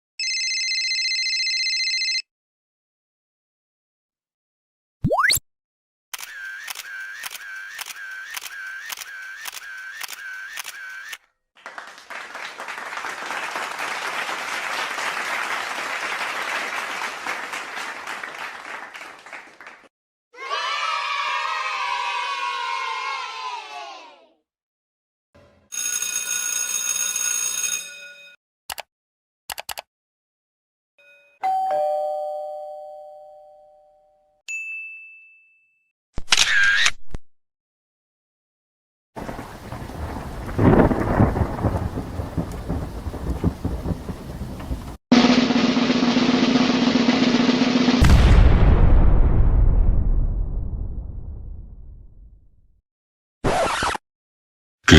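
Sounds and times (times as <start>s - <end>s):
camera shutter clicks: 6.2s - 11.2s, 36.3s - 36.9s
crowd applauding: 11.6s - 19.9s, 39.2s - 45.0s
two-note doorbell chime: 31.0s - 35.8s.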